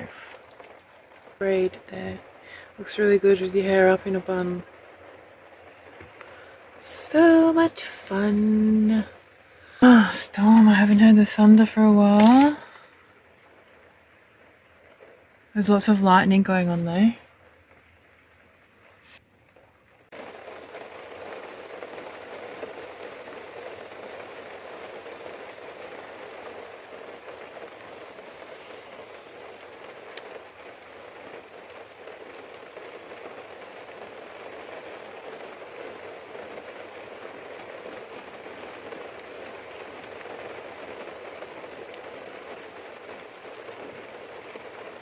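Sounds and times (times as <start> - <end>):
rain falling on roof: 0.0 - 45.0.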